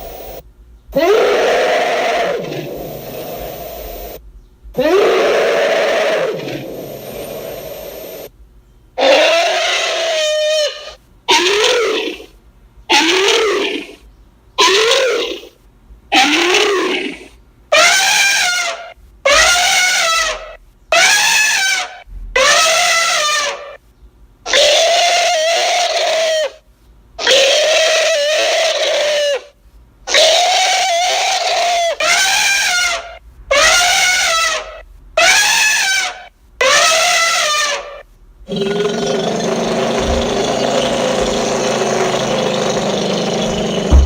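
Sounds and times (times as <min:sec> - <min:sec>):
creature calls rising and falling: 0:00.0 - 0:00.4, 0:01.0 - 0:04.2, 0:04.8 - 0:08.3, 0:30.1 - 0:44.0.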